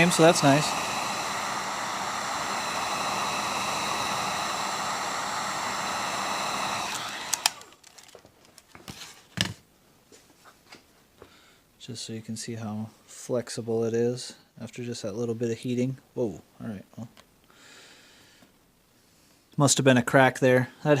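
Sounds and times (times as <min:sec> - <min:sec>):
hot-air blower running: 0:00.0 - 0:08.1.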